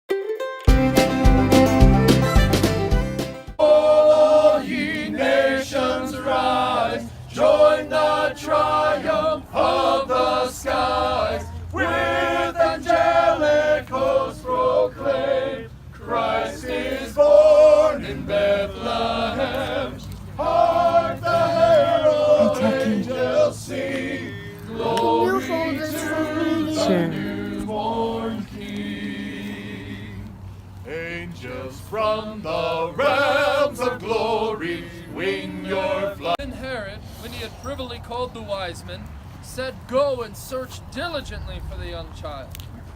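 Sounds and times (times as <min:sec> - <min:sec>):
choir singing: 0:03.6 - 0:36.4.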